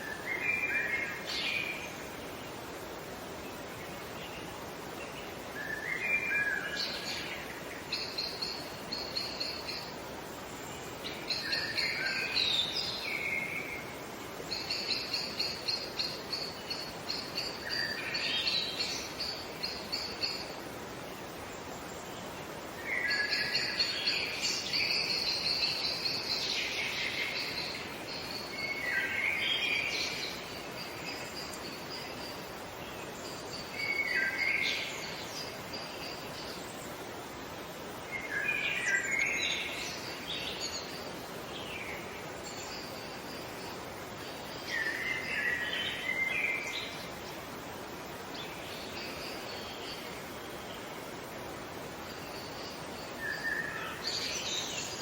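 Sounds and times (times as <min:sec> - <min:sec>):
songbirds singing: 0:00.0 - 0:55.0
steady background hiss: 0:00.0 - 0:55.0.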